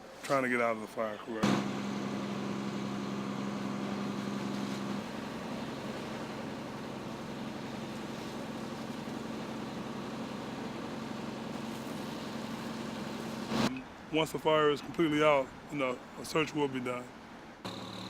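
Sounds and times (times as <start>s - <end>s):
heavy engine idling: 1.4s - 13.7s, 17.7s - 18.0s.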